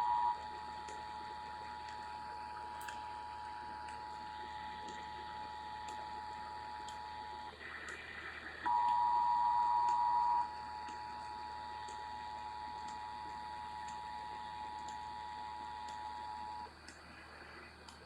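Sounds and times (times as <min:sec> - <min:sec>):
single steady tone: 0:00.0 - 0:00.5, 0:08.7 - 0:10.6
faint ticking clicks: 0:16.7 - 0:17.1, 0:17.8 - 0:18.0.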